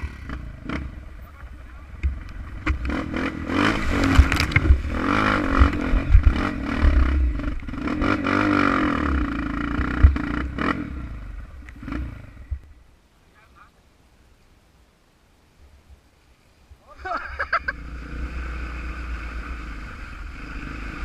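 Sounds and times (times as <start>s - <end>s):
motorcycle engine revving: 0.0s - 12.6s, 17.7s - 21.0s
motorcycle knocks and rattles: 2.0s - 8.2s, 9.6s - 10.8s.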